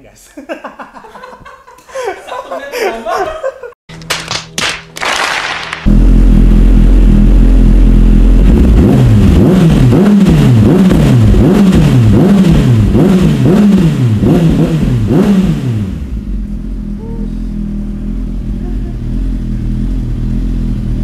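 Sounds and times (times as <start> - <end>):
motorcycle engine revving: 5.8 - 21.0.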